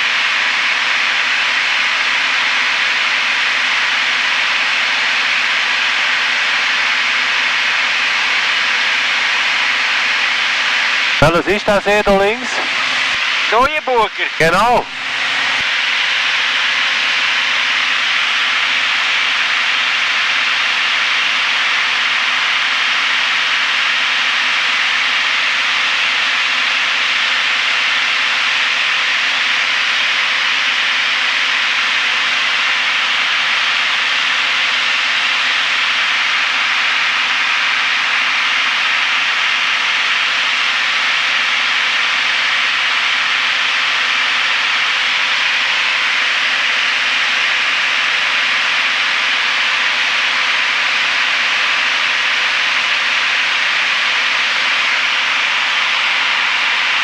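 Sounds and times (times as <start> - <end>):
aircraft cabin engine and airflow hiss: 0.0 - 57.0.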